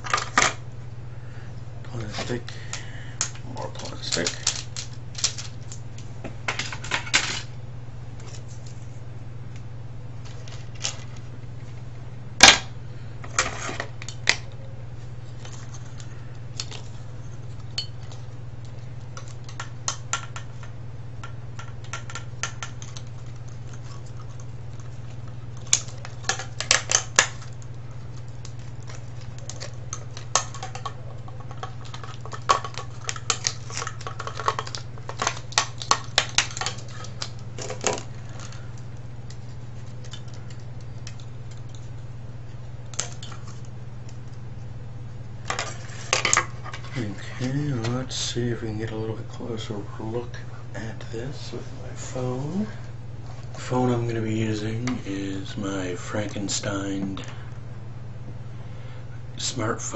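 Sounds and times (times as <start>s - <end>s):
plastic parts clicking and clattering: 3.8s - 5.8s, 28.5s - 38.5s.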